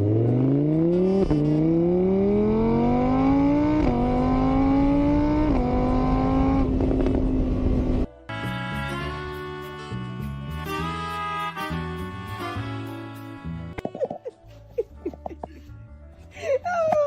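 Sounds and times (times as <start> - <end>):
car engine accelerating: 0.0 - 8.1.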